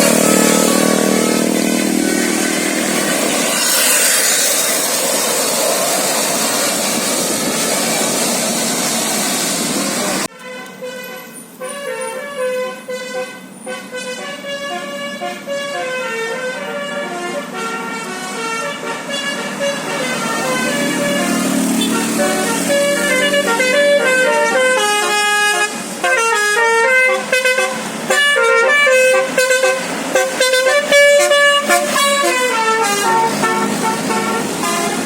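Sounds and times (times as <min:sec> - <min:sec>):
musical bus air horn: 0:00.0 - 0:04.7, 0:10.0 - 0:35.0
loud rushing noise: 0:00.0 - 0:10.3, 0:19.0 - 0:24.6, 0:29.2 - 0:35.0.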